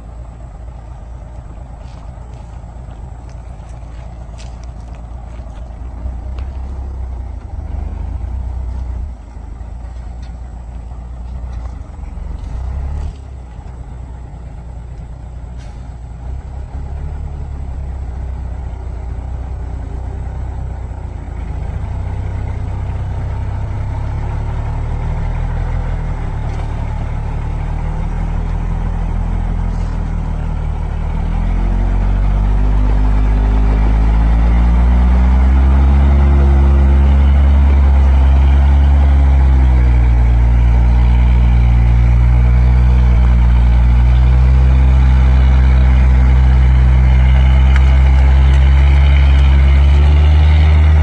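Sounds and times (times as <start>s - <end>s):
heavy diesel engine under load: 0.0s - 51.0s.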